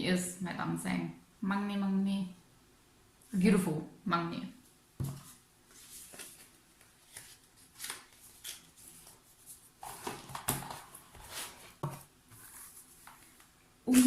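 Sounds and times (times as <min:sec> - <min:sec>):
paper and plastic rustling: 0:05.0 - 0:13.5.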